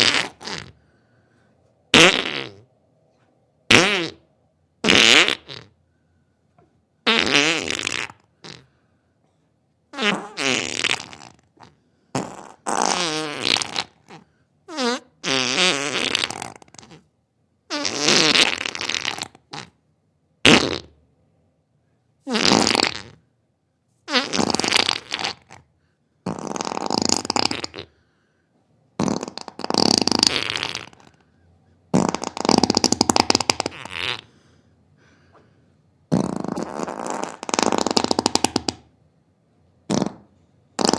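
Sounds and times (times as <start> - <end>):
farts: 0.0 - 0.8, 1.9 - 2.7, 3.7 - 5.8, 7.0 - 8.7, 9.9 - 17.1, 17.7 - 19.8, 20.4 - 21.0, 22.2 - 23.2, 24.1 - 28.0, 29.0 - 31.2, 31.9 - 34.3, 36.1 - 38.9, 39.8 - 40.9.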